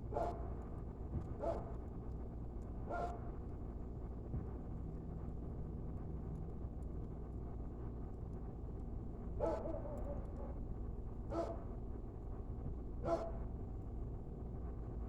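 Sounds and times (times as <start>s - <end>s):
dog barking: 0.1s - 0.4s, 1.4s - 1.7s, 2.9s - 3.2s, 9.4s - 10.6s, 11.3s - 11.7s, 13.0s - 13.4s.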